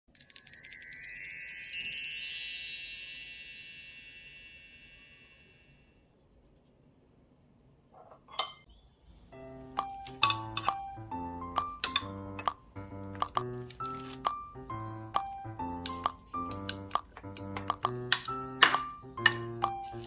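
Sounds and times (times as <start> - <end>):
bright bar chimes: 0.1 - 5.8.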